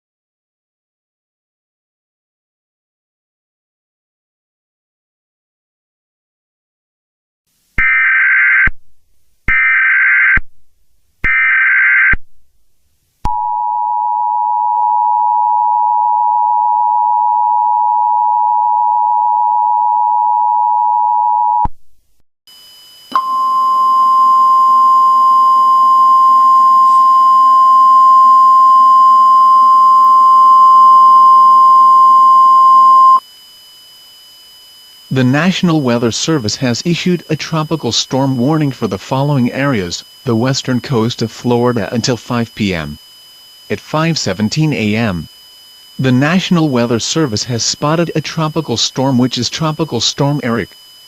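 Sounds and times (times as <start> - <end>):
two-tone attention signal: 22.5 - 33.2, 45.9 - 51.0
screechy digital header bursts: 35.1 - 51.0
steady alert tone: 46.0 - 50.8.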